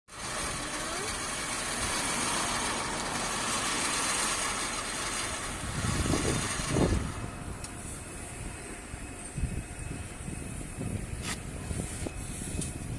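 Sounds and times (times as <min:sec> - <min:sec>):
drilling rig hissing: 0:00.1 - 0:12.9.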